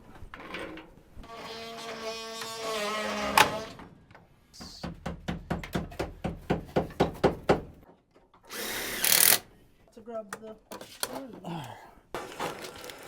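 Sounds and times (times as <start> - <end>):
sharp knocks: 4.7 - 7.8.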